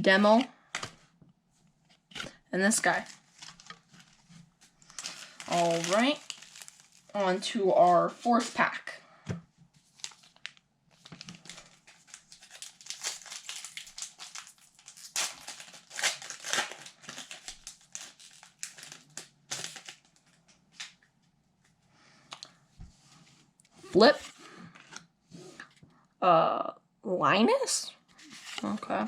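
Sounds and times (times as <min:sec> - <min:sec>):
plastic wrapper crinkling and tearing: 0:02.1 - 0:07.2, 0:09.8 - 0:21.1.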